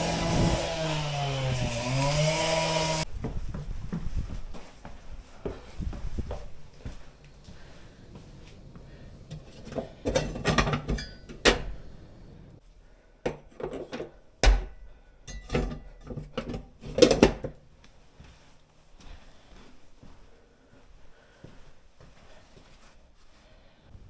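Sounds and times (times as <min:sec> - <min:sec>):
knocks and clattering of handling: 0:09.3 - 0:11.9, 0:13.2 - 0:17.7.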